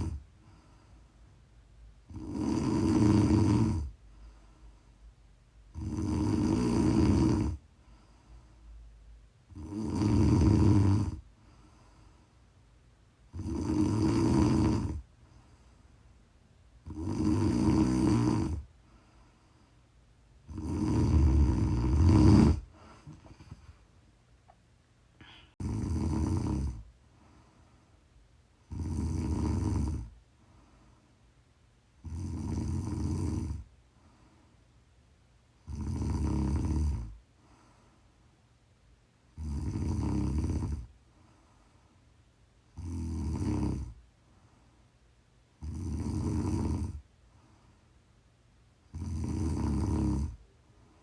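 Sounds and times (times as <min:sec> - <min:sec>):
woman snoring: 0:00.0 - 0:00.2, 0:02.1 - 0:04.0, 0:05.7 - 0:07.6, 0:09.5 - 0:11.3, 0:13.3 - 0:15.0, 0:16.8 - 0:18.7, 0:20.4 - 0:23.6, 0:25.2 - 0:26.9, 0:28.7 - 0:30.2, 0:32.0 - 0:33.7, 0:35.6 - 0:37.2, 0:39.3 - 0:40.9, 0:42.8 - 0:44.0, 0:45.6 - 0:47.0, 0:48.9 - 0:50.4.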